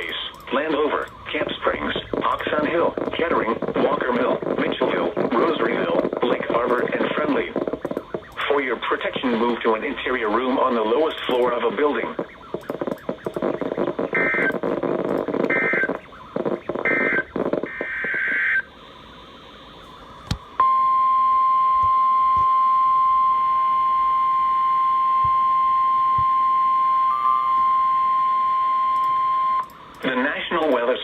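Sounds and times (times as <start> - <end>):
crackly radio noise: 0.0 - 20.6, 25.2 - 31.0
steady alarm tone: 5.0 - 29.8
buzzy digital data screeches: 12.6 - 18.6
click: 29.0 - 30.1.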